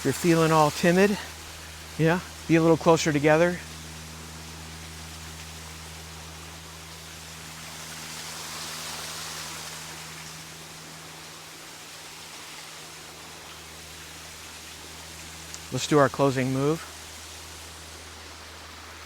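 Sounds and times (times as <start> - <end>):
waterfall rushing: 0.0 - 3.6, 14.7 - 19.0
low hum: 0.0 - 19.0.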